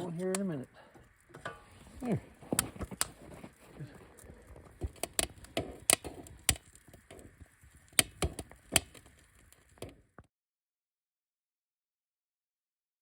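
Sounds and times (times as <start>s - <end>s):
campfire crackling and popping: 0.0s - 10.3s.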